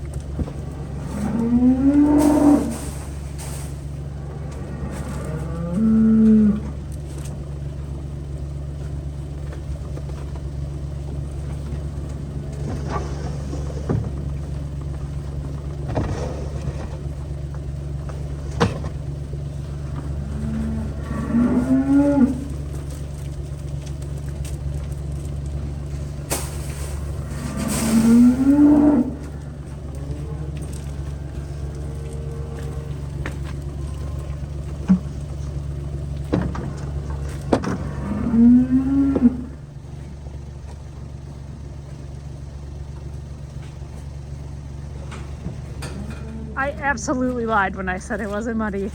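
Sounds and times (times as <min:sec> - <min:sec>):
low engine hum: 0:00.0 - 0:48.9
cattle mooing: 0:00.3 - 0:07.0, 0:19.5 - 0:23.3, 0:27.0 - 0:35.6, 0:36.7 - 0:39.8, 0:45.8 - 0:48.5.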